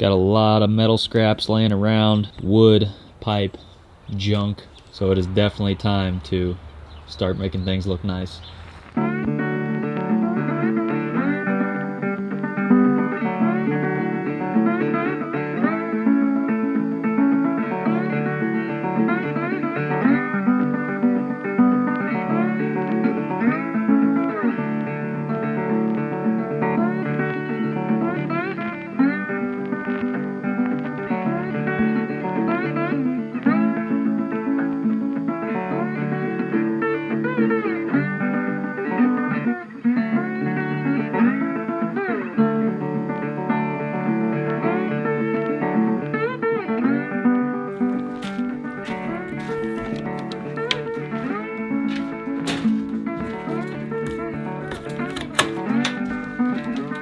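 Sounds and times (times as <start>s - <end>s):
country guitar instrumental: 0.0s - 3.6s, 7.2s - 57.0s.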